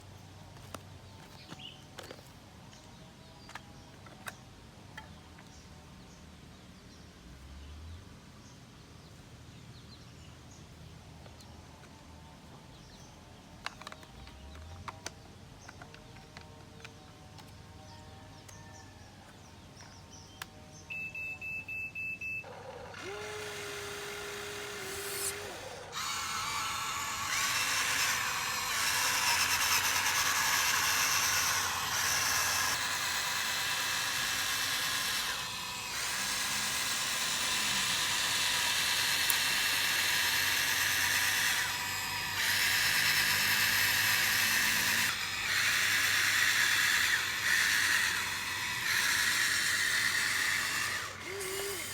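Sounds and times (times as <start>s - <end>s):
short beeps: 20.9s - 22.4s
small electric motors whining: 22.2s - 51.9s.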